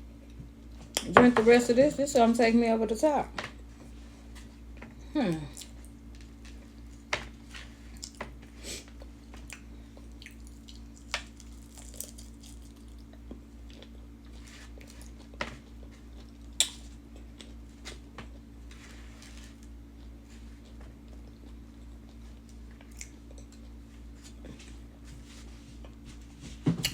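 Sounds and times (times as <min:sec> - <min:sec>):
steady low hum: 0:00.0 - 0:26.9
person chewing and biting: 0:07.7 - 0:08.2, 0:08.8 - 0:18.5, 0:19.6 - 0:24.4.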